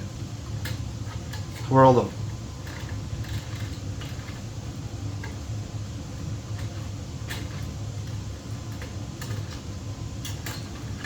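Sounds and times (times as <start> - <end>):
electrical wires clicking: 0.0 - 11.0
steady low hum: 0.0 - 11.0.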